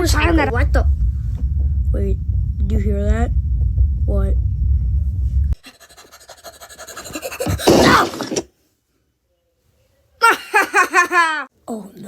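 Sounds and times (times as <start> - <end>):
loud crash: 0.0 - 5.6, 7.2 - 8.5.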